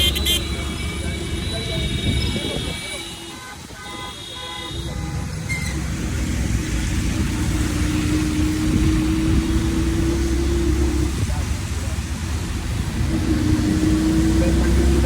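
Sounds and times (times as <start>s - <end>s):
vehicle horn toot: 0.0s - 5.7s
vehicle engine and tyre noise: 0.0s - 15.0s.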